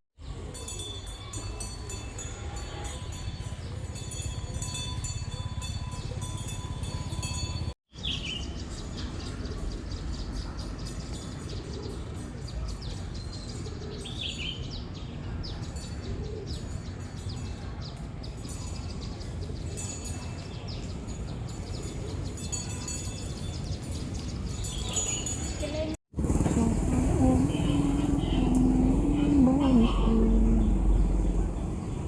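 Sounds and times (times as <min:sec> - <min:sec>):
low background rumble: 0:26.2 - 0:32.0.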